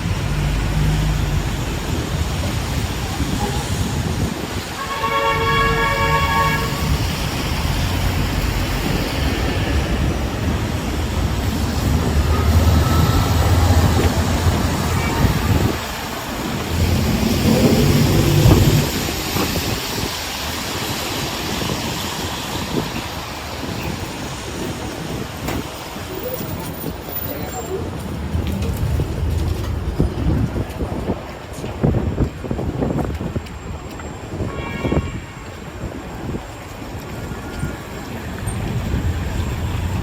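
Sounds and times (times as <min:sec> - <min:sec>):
heavy vehicle rumbling past: 0:00.0 - 0:22.2, 0:26.8 - 0:32.0.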